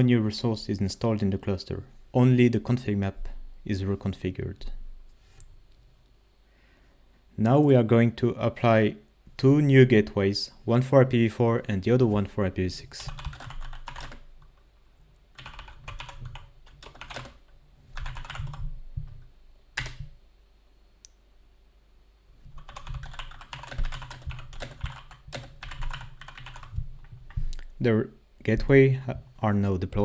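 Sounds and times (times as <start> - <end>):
computer keyboard typing: 13.0 - 14.3, 15.4 - 18.7, 19.8 - 20.1, 22.5 - 26.8.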